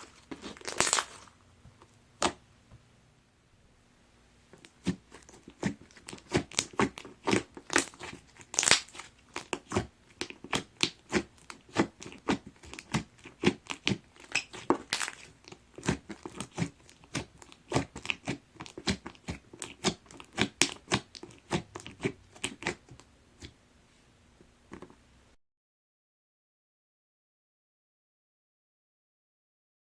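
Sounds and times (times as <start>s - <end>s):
slime squeezed by hand: 4.7s - 22.9s.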